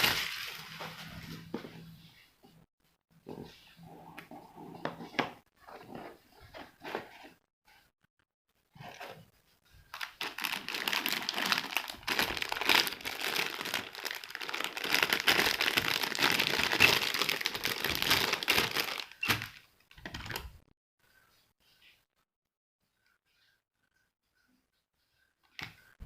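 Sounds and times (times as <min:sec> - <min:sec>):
packaging crinkling: 0:09.9 - 0:20.4.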